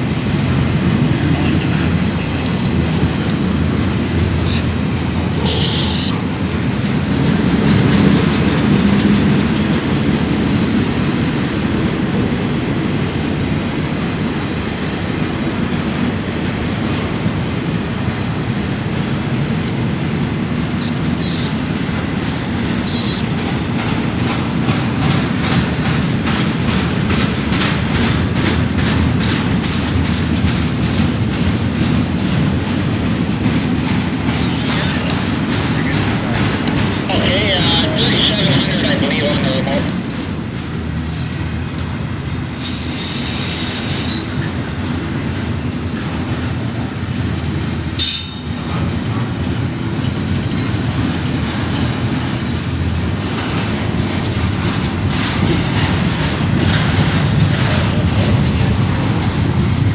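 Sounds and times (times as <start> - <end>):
freight train wheels rumbling on rail: 0.0 - 59.9
wheels clacking over rail joints: 18.1 - 37.1, 44.3 - 59.9.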